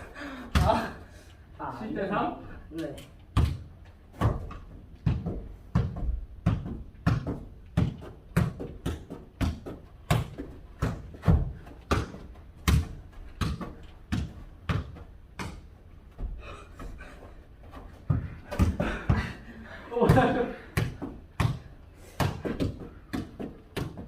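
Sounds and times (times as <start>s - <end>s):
ball bouncing on hard floor: 3.3s - 16.3s, 17.7s - 19.3s, 20.1s - 24.0s.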